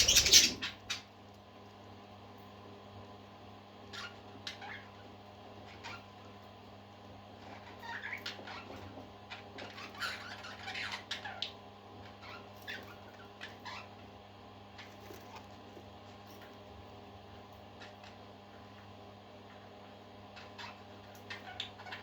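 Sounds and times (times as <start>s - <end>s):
parakeets chirping: 0.0s - 1.1s, 3.9s - 6.4s, 7.3s - 15.7s, 17.6s - 22.0s.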